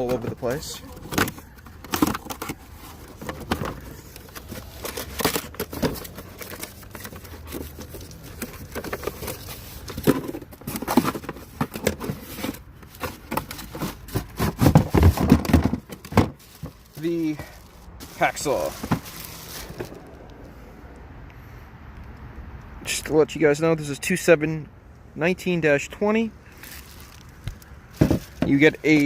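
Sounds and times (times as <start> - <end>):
clicks and knocks of handling: 0.0 - 17.1
packaging rustling and crinkling: 0.0 - 20.2, 26.5 - 29.0.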